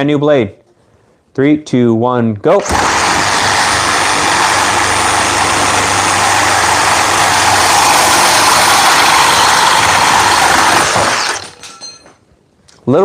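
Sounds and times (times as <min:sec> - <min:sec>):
reciprocating saw cutting steel: 0:02.6 - 0:11.6.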